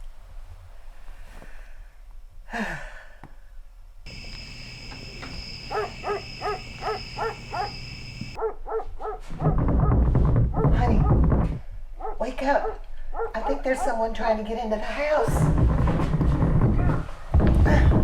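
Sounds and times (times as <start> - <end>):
dog barking: 4.1 - 9.6, 12.0 - 14.0.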